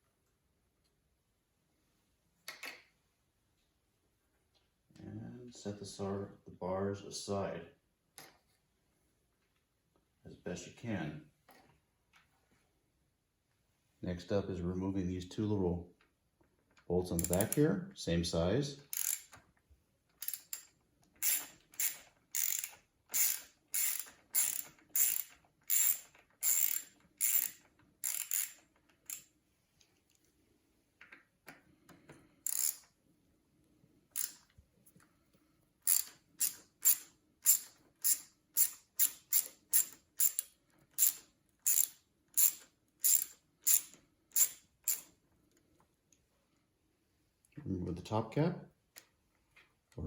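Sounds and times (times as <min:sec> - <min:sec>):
hand ratchet clicking: 0:17.2 - 0:17.6, 0:18.9 - 0:19.4, 0:20.2 - 0:29.3, 0:32.4 - 0:32.9, 0:34.2 - 0:34.4, 0:35.8 - 0:45.1.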